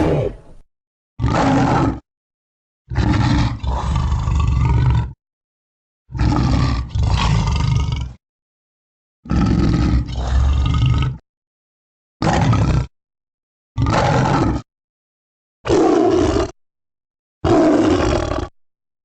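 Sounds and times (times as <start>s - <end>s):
cartoon creature roars: 0.0s - 0.6s, 1.2s - 2.0s, 2.9s - 5.2s, 12.2s - 12.9s, 13.8s - 14.7s, 17.4s - 18.6s.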